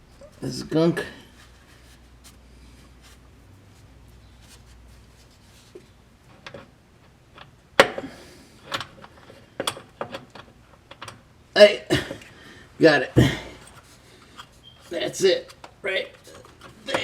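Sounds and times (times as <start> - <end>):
hands rubbing and handling parts: 0.0 - 8.0, 13.5 - 17.0.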